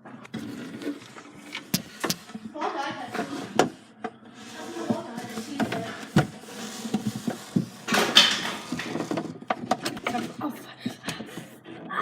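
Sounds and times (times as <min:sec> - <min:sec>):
hard objects knocking and clattering: 0:00.0 - 0:12.0
scraping rustle: 0:00.0 - 0:12.0.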